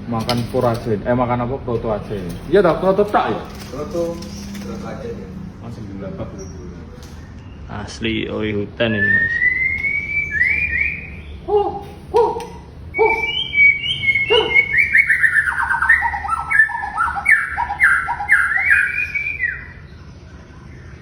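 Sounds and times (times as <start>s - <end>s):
bird singing whistled phrases: 8.9s - 20.0s.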